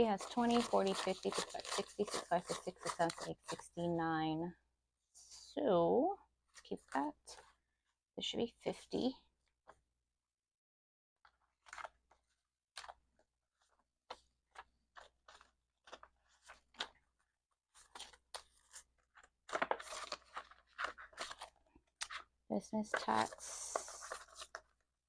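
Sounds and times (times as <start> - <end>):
paper bills crinkling: 0.0 - 3.6, 13.6 - 22.2.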